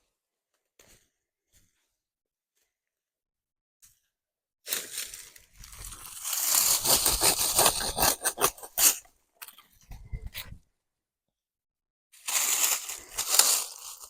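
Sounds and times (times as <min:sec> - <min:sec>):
crunching and rustling: 0:04.7 - 0:09.0, 0:12.2 - 0:14.0.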